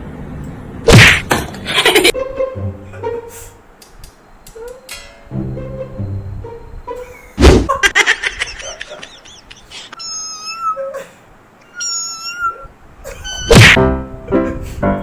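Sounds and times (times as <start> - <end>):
loud thump: 0.9 - 1.6, 7.4 - 7.8, 13.5 - 13.8
animal high cries: 9.2 - 13.8
pet animal squeaky calls: 9.4 - 11.0, 11.6 - 13.7.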